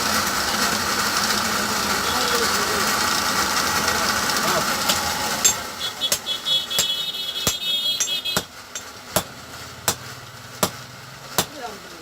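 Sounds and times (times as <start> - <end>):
hammer blows on metal: 4.9 - 9.3.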